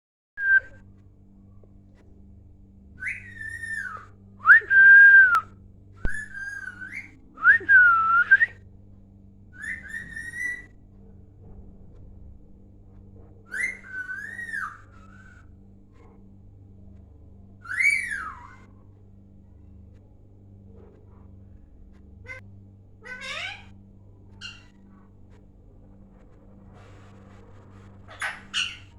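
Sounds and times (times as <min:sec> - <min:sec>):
parrot whistling: 0:13.5 - 0:15.4, 0:17.7 - 0:18.6, 0:28.1 - 0:28.9.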